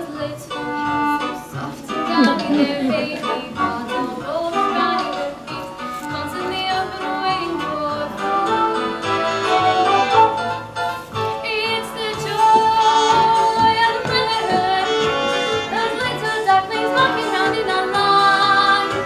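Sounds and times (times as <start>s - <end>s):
young woman singing: 0.0s - 8.9s, 11.4s - 19.0s
instrumental accompaniment: 0.0s - 19.0s.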